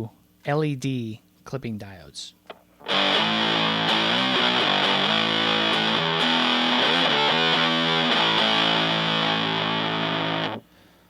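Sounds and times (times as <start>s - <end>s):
fuzz-distorted electric guitar: 2.8s - 10.6s.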